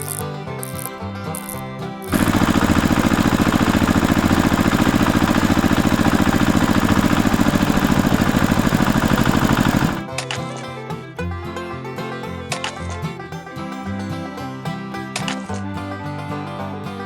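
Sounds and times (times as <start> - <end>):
small motor pulsing: 0.0 - 10.7, 15.2 - 15.6.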